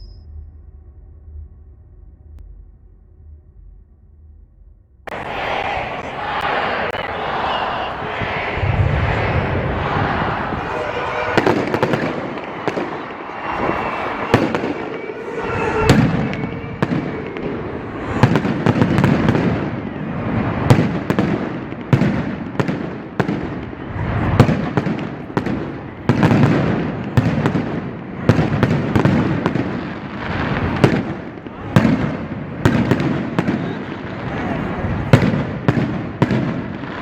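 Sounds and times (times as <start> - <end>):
fireworks bangs and crackles: 5.1 - 37.0
heavy low firework booms: 8.0 - 37.0.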